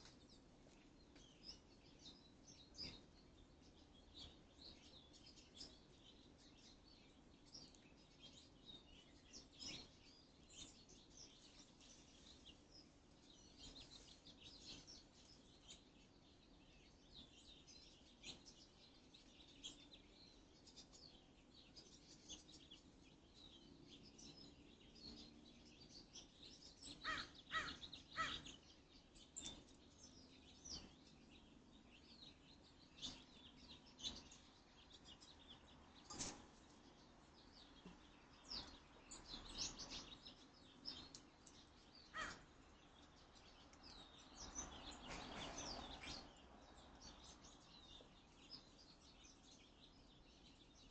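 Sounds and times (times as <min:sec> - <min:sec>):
birds chirping: 0:00.0 - 0:50.9
harsh bird calls: 0:23.5 - 0:50.9.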